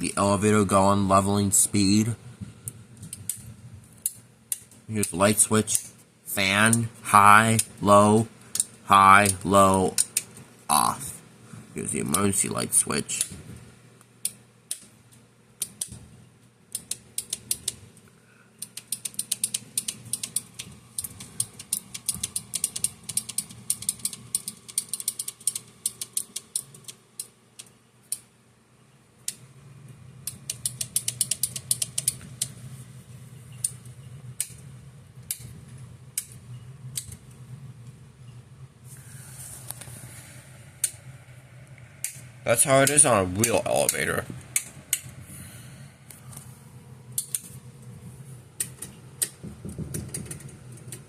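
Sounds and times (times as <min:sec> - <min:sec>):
low steady hum: 0:00.0 - 0:51.0
elevator buttons clicking: 0:18.6 - 0:28.3, 0:30.2 - 0:32.6.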